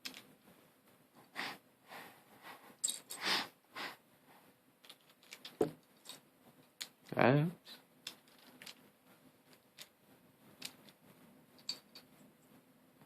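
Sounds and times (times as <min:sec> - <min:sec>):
puzzle cube turning: 0:04.8 - 0:06.2, 0:08.0 - 0:08.8.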